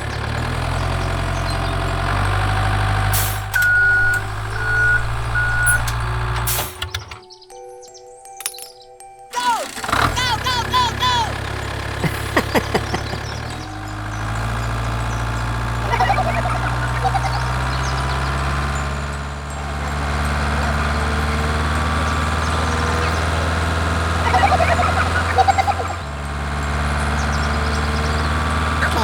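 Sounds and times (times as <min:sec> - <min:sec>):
tractor engine drone: 0:00.0 - 0:07.2, 0:09.3 - 0:29.0.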